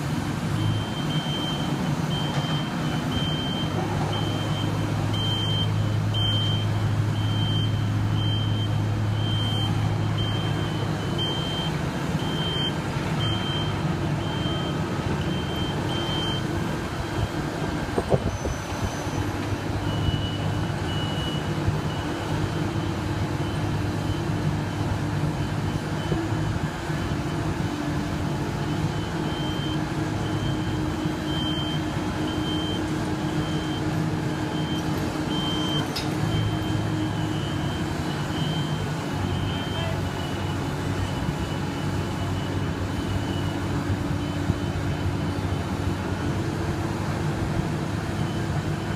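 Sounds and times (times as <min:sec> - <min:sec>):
diesel construction machinery hum: 0:00.0 - 0:48.9
backup alarm beeping: 0:00.6 - 0:16.5, 0:29.0 - 0:43.6.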